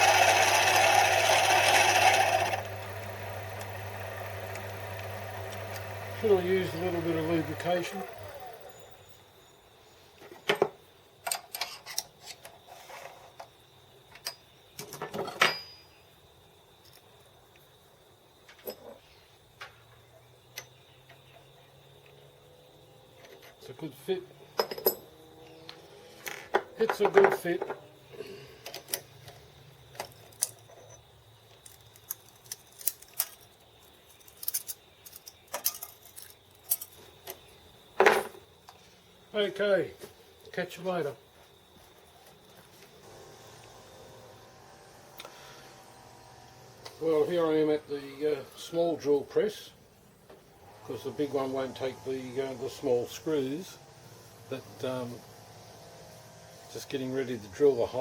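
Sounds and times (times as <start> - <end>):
metal parts clicking: 31.6 - 37.4.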